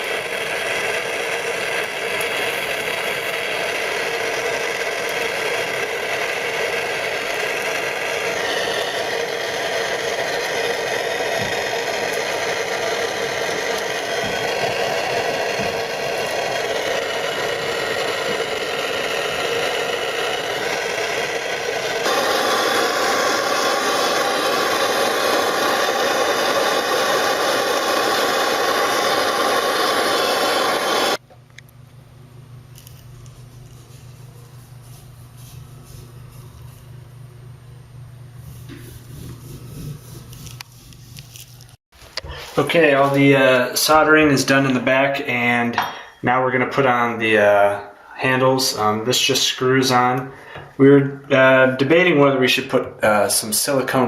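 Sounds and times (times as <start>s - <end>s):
blowtorch flame roaring: 0.0s - 31.2s, 35.2s - 45.9s.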